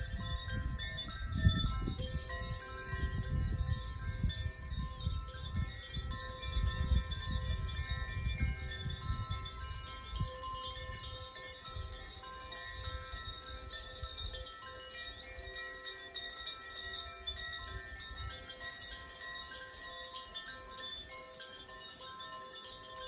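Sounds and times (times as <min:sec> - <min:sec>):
wind on microphone rumble: 0:00.0 - 0:14.5
wind chimes ringing: 0:00.0 - 0:23.0.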